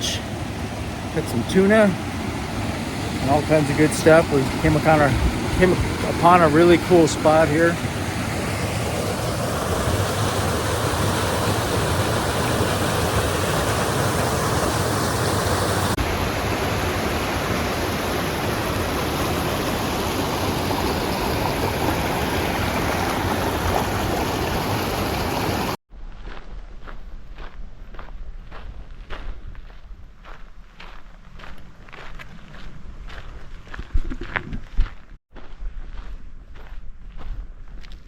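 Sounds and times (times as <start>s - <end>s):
fast-flowing stream water: 0.0s - 25.8s.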